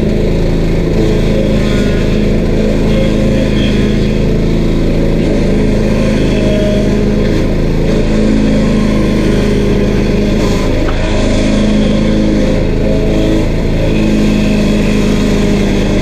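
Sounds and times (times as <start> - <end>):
stump grinder engine running: 0.0 - 16.0.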